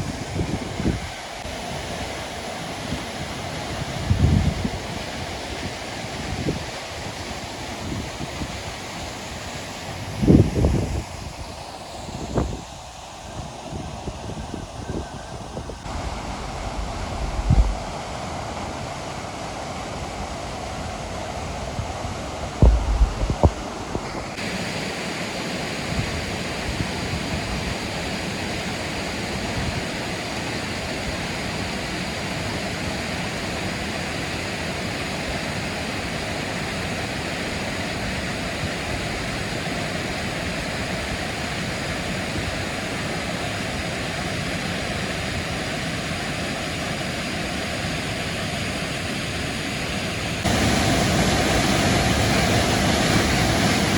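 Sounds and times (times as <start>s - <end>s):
wind on microphone: 0.0s - 2.1s, 2.9s - 8.8s, 9.4s - 24.6s
waterfall roaring: 15.3s - 53.9s.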